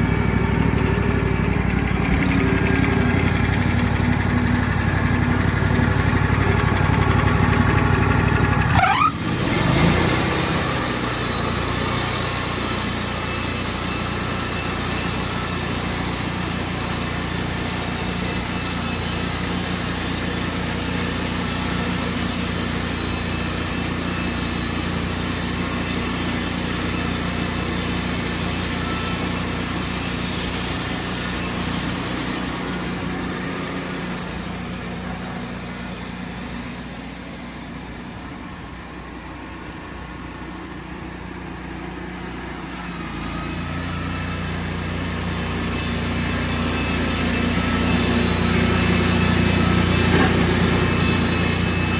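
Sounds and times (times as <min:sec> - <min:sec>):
sawmill engine running: 0:00.0 - 0:51.9
brief rising whine: 0:08.7 - 0:16.0, 0:26.4 - 0:51.9.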